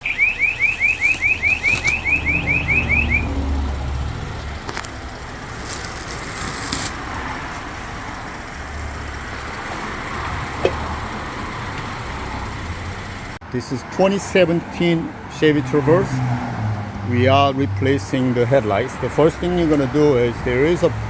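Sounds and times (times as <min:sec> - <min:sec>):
car alarm chirps: 0:00.0 - 0:03.7.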